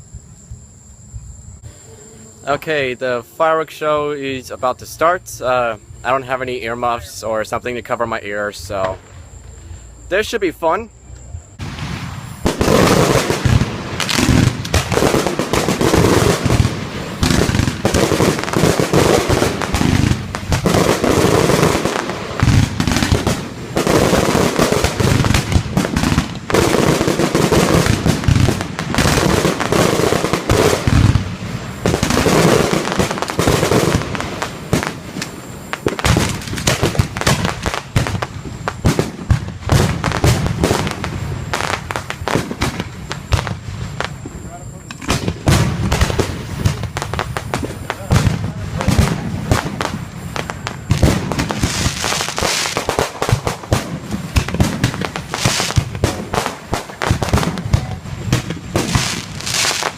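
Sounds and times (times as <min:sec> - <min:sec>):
fireworks shells bursting: 0:11.1 - 0:59.9.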